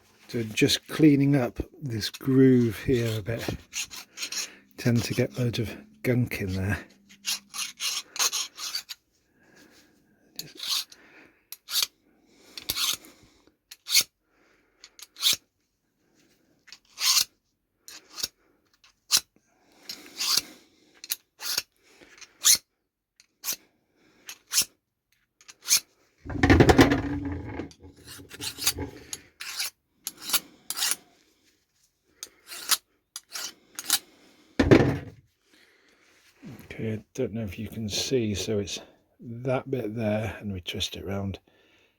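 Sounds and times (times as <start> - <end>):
file rasping against steel: 2.8 - 5.6, 6.9 - 9.0, 10.4 - 11.9, 12.6 - 13.1, 13.7 - 14.1, 14.9 - 15.4, 16.7 - 17.3, 17.9 - 18.4, 19.9 - 20.5, 21.1 - 22.6, 23.4 - 23.6, 24.2 - 24.7, 25.4 - 31.1, 32.2 - 34.0
handling bumps: 26.3 - 29.1, 34.6 - 35.2.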